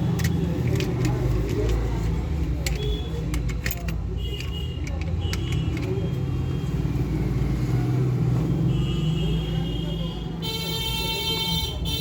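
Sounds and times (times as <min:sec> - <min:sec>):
clicks and clatter of small parts: 0:00.0 - 0:06.2.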